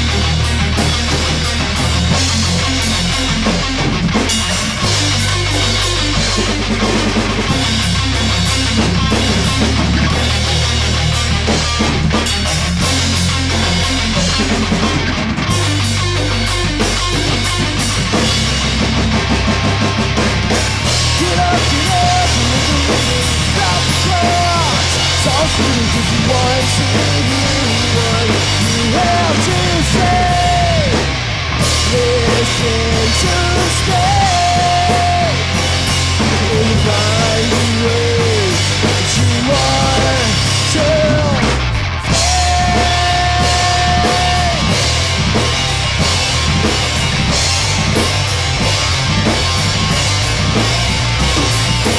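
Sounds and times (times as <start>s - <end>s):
drum kit: 0.0s - 51.9s
rock band playing: 0.0s - 51.9s
person singing: 21.1s - 31.2s, 31.8s - 35.6s, 36.2s - 45.0s.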